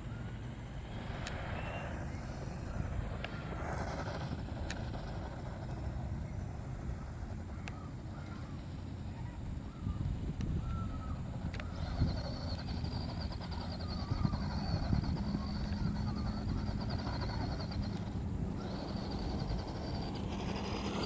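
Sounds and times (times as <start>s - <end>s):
motor running with low rumble: 0.0s - 21.0s.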